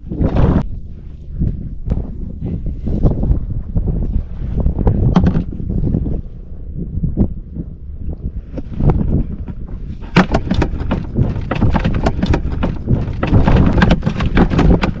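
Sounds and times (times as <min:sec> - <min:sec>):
wind buffeting microphone: 0:00.0 - 0:15.0
sharp knocks and slaps: 0:10.0 - 0:15.0.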